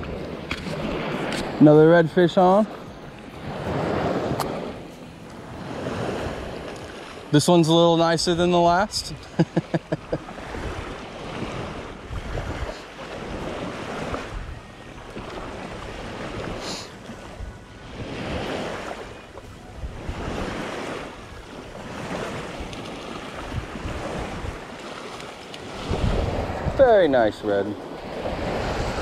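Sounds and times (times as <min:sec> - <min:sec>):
shallow water sloshing: 0:09.6 - 0:26.8
wind buffeting microphone: 0:10.3 - 0:29.0.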